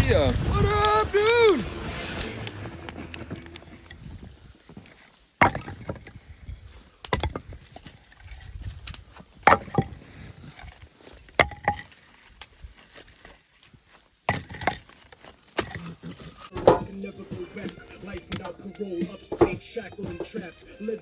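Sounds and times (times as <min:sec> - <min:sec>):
sharp knocks: 0:16.5 - 0:17.0.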